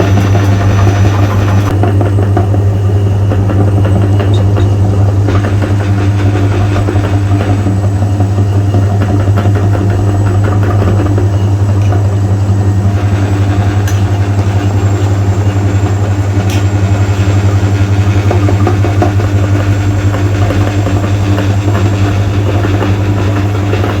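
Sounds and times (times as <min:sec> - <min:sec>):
electric meat grinder running: 0:00.0 - 0:24.0.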